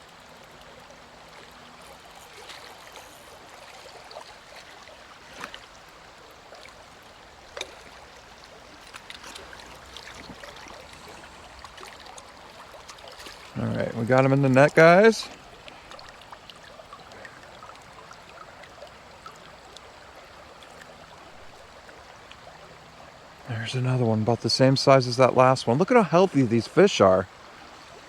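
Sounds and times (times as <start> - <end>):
creek water running over rocks: 0.0 - 28.0.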